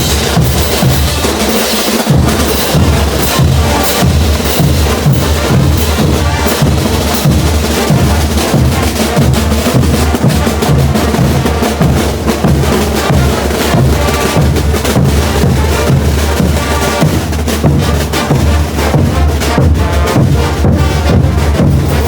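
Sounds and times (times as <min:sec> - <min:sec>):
brass band playing: 0:00.0 - 0:22.0
heavy bass drum beat: 0:00.0 - 0:22.0
snare drum: 0:00.0 - 0:22.0.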